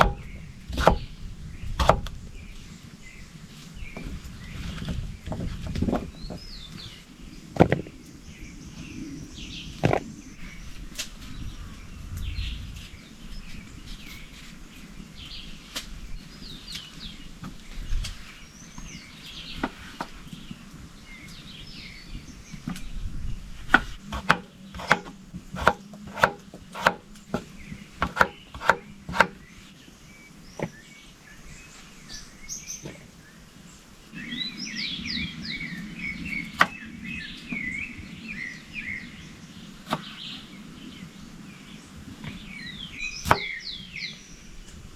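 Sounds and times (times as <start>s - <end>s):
sharp chopping knocks: 0.0s - 1.1s, 1.8s - 2.1s, 23.7s - 29.4s, 43.2s - 43.6s
small birds chirping: 0.0s - 44.9s.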